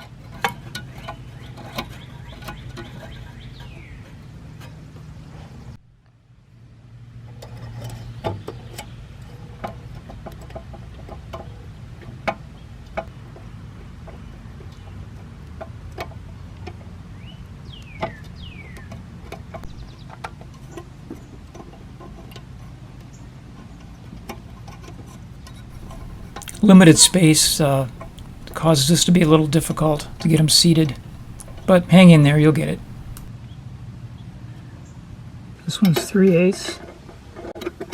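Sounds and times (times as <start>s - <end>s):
low steady hum: 25.7s - 33.3s.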